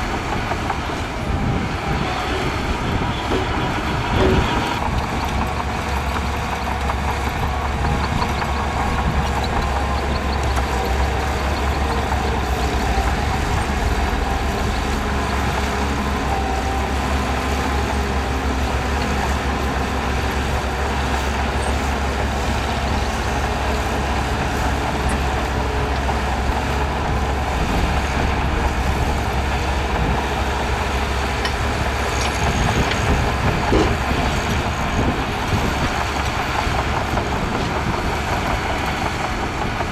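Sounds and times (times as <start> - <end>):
diesel machinery engine rumble: 0.0 - 39.9.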